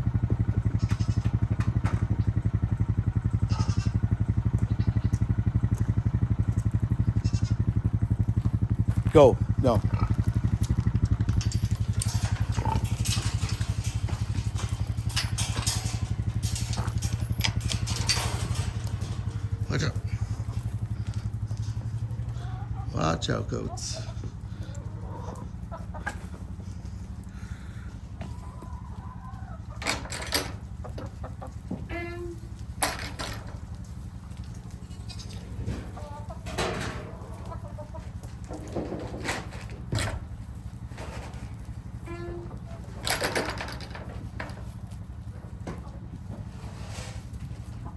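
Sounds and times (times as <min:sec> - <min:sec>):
light clatters and knocks: 0:00.0 - 0:03.4, 0:04.0 - 0:47.9
engine idling with low throb: 0:00.0 - 0:47.9
steady low hum: 0:00.0 - 0:47.9
goat bleating: 0:00.4 - 0:01.6, 0:03.2 - 0:05.9, 0:06.8 - 0:08.3, 0:31.9 - 0:32.6, 0:42.0 - 0:42.7.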